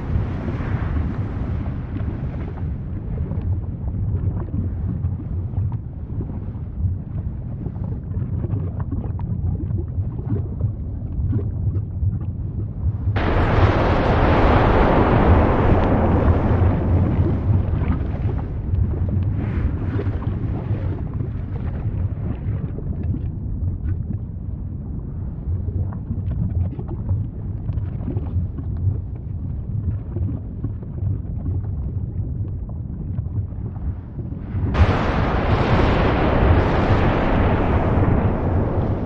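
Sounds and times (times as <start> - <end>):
loud volcanic blast: 0.0 - 3.3, 13.2 - 21.4, 34.4 - 39.0
deep volcanic rumble: 0.0 - 39.0
faint crackles: 13.1 - 24.2, 29.8 - 39.0.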